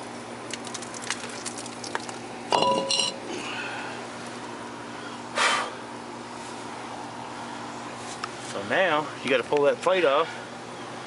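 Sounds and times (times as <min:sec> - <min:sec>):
ringing metal clank: 0:02.5 - 0:03.2.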